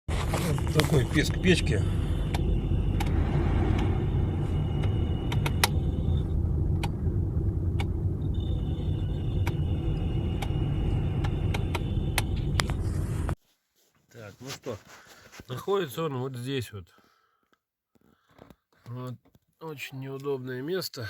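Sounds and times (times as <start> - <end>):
blower rush and rumble: 0.1 - 13.4
blower motor high squeal: 0.9 - 12.8.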